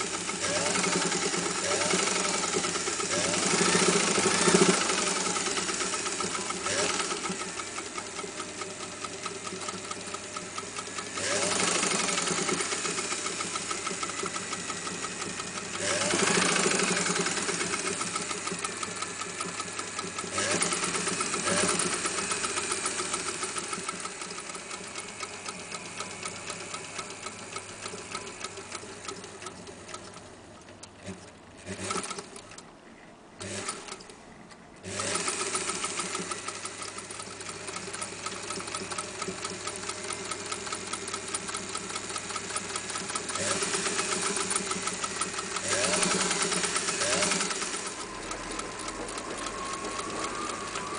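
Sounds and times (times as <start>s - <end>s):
sewing machine stitching: 0.0s - 32.6s, 33.4s - 34.2s, 34.8s - 50.9s.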